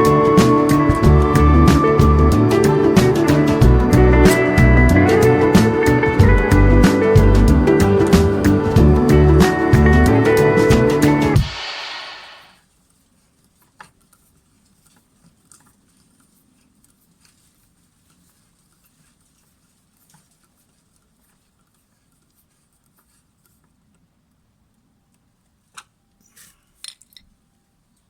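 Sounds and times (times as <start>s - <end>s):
faint clicks and handling noises: 12.7s - 27.4s.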